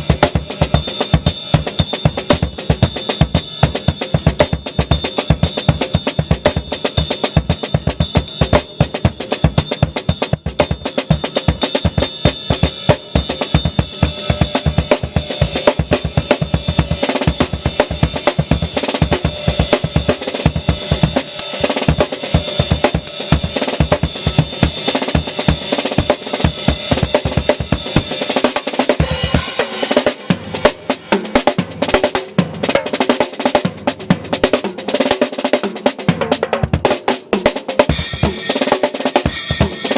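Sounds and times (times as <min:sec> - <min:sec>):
ringing cymbals: 0:00.0 - 0:28.4.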